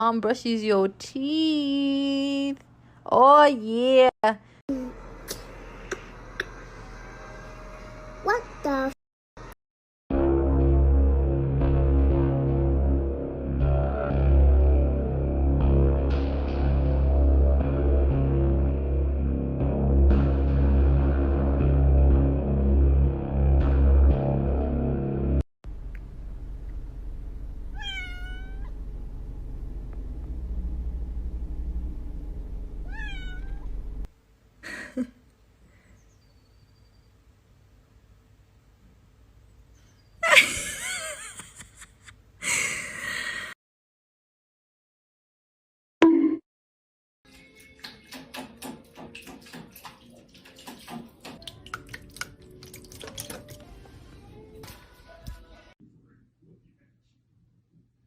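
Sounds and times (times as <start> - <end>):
steady low rumble: 25.7 - 34.1
cat meowing: 27.8 - 28.7, 32.8 - 33.8
water splashing and dripping: 47.3 - 53.9.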